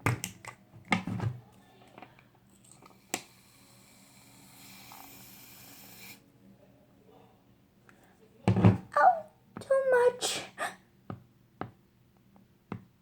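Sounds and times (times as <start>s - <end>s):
aerosol spray hiss: 3.4s - 6.2s.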